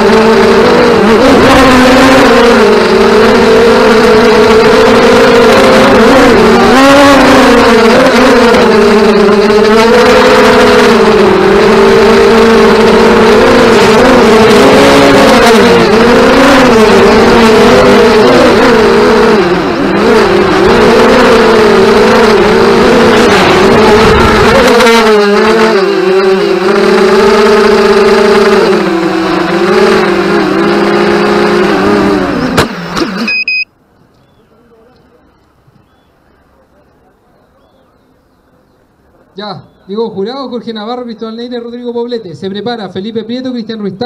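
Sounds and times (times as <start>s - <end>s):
quadcopters buzzing: 0.0s - 37.3s
drone motors whining: 0.0s - 39.9s
sharp crack: 32.5s - 33.3s
short beeps: 33.1s - 33.8s.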